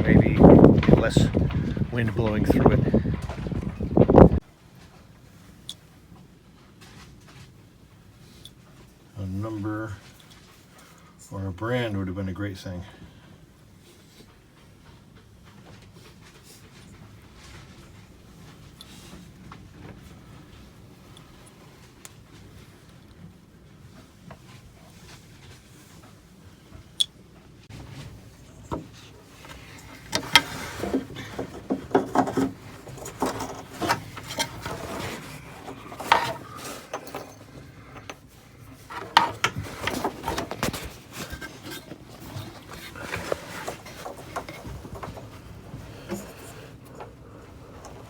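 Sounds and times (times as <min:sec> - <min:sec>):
hands handling parts: 0:27.7 - 0:48.0
clicks and knocks: 0:28.6 - 0:38.2, 0:38.8 - 0:45.4.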